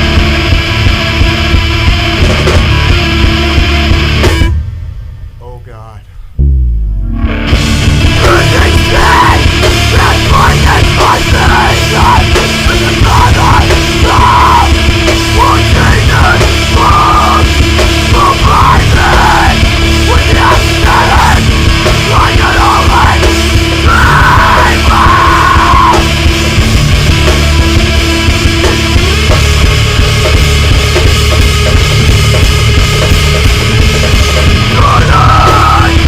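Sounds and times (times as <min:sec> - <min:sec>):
metalcore band playing: 0:00.0 - 0:36.0
screamed lead vocal: 0:07.2 - 0:28.8, 0:34.2 - 0:36.0.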